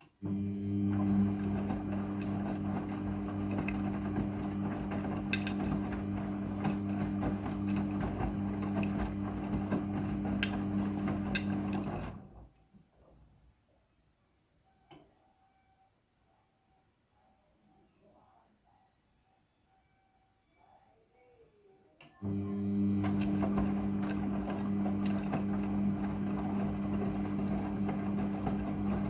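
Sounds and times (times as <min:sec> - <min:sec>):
washing machine motor hum: 0:00.2 - 0:12.5, 0:22.2 - 0:29.0.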